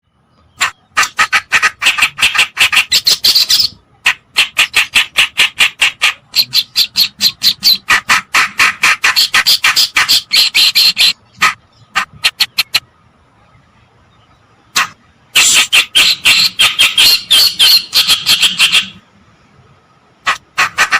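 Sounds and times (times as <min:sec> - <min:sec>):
warbler harsh chattering song: 0:00.5 - 0:12.9, 0:14.8 - 0:19.0.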